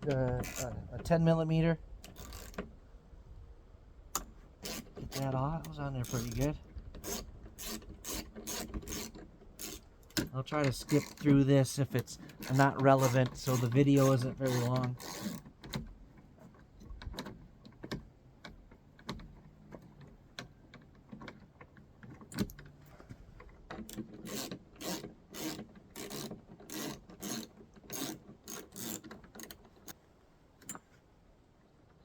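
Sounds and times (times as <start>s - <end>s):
ratchet wrench clicking: 0.4s - 0.7s, 2.1s - 2.6s, 6.0s - 11.4s, 12.4s - 15.4s, 24.2s - 30.0s.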